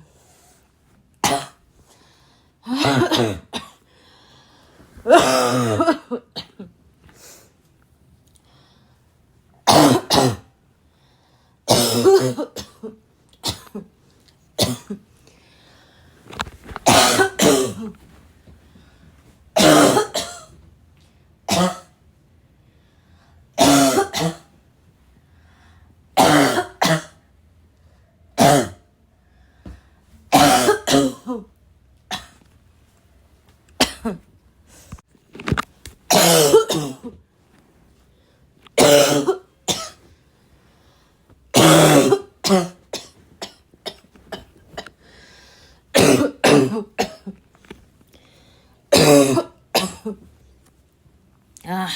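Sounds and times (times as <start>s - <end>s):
girl coughing raspy: 2.6s - 3.8s, 5.0s - 6.7s, 9.7s - 10.5s, 11.7s - 13.9s, 14.6s - 15.0s, 16.9s - 18.0s, 19.6s - 20.5s, 23.6s - 24.5s, 26.2s - 27.2s, 28.4s - 28.8s, 30.3s - 31.5s, 33.8s - 34.2s, 36.1s - 37.2s, 38.8s - 40.0s, 41.6s - 44.9s, 45.9s - 47.4s, 48.9s - 50.2s.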